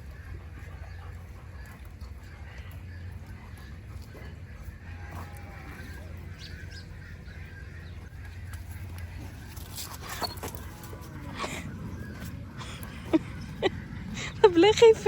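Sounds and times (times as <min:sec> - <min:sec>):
poultry calling: 0:00.0 - 0:15.0
steady low hum: 0:00.0 - 0:15.0.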